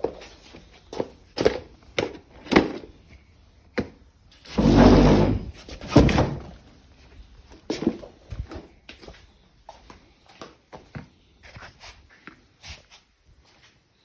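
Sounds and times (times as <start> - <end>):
loud scraping slide: 4.5 - 5.7.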